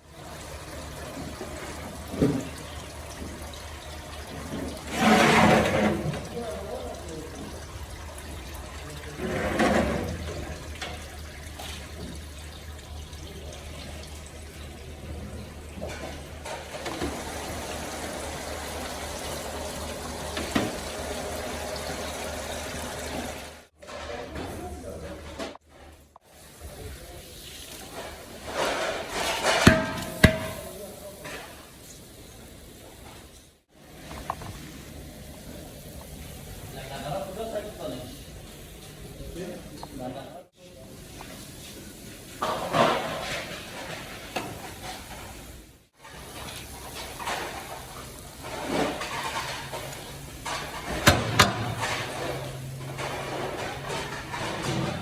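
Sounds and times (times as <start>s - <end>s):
rubbing or scraping: 4.9s - 6.1s
food sizzling in a pot: 16.8s - 23.7s, 26.3s - 39.2s, 40.9s - 54.5s
sharp knocks with ringing tone: 29.7s - 30.7s.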